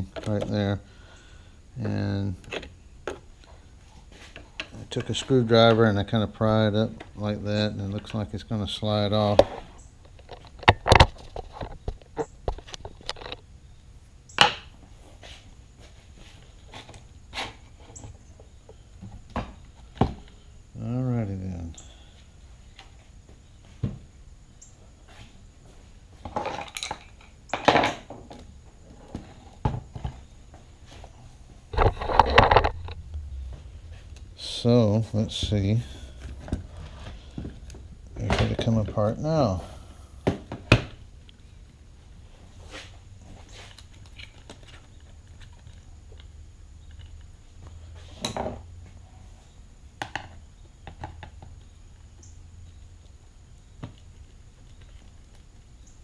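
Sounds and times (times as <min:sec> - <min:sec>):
plastic clattering and scraping: 0:09.3 - 0:13.4, 0:26.2 - 0:30.3, 0:30.9 - 0:33.2.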